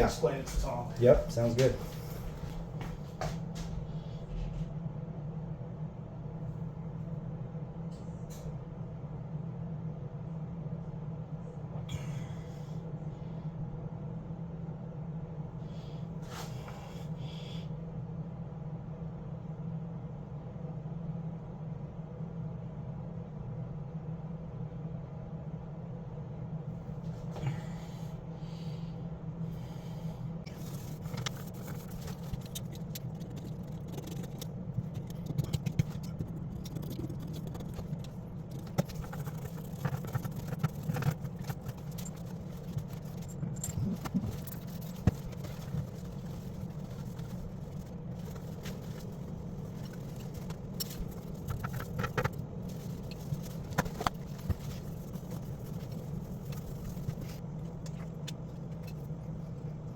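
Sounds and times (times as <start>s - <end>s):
steady low hum: 0.0s - 59.9s
tools and parts rattling: 30.5s - 59.9s.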